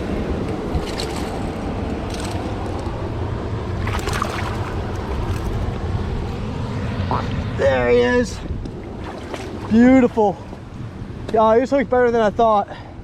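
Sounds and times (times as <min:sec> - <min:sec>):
flowing river water: 0:00.0 - 0:07.6, 0:08.7 - 0:11.2
wind on microphone: 0:00.0 - 0:11.3
fish splashing: 0:03.8 - 0:05.8.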